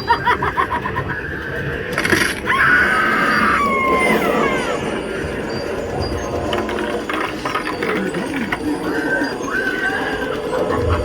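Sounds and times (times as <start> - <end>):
shrill scream-like tone: 2.5 - 5.0.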